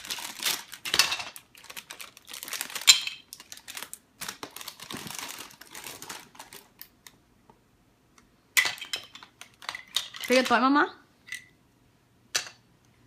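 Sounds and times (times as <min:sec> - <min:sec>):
plastic bags crinkling: 0:00.0 - 0:07.1.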